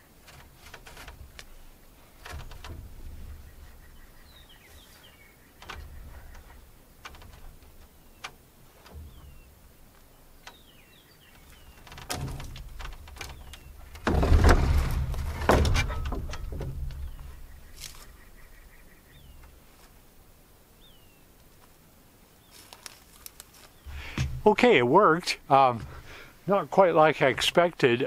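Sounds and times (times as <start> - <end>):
wooden truss knocking: 0.0 - 10.7, 11.4 - 19.6, 23.9 - 24.7
small birds chirping: 0.0 - 14.1, 15.8 - 28.0
truss scraping: 0.0 - 20.1, 23.5 - 27.7.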